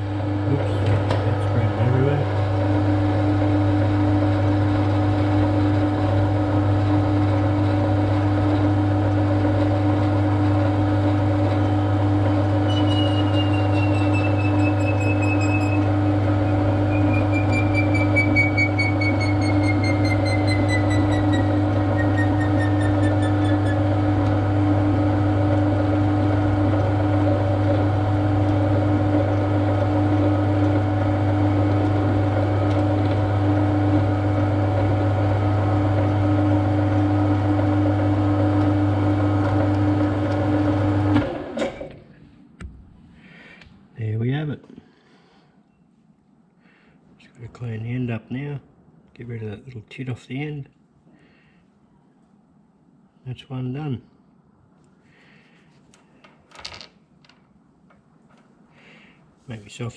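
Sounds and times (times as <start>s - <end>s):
machine tool motor hum: 0.1s - 34.7s
high whistle sliding down: 12.7s - 15.9s, 16.9s - 23.8s.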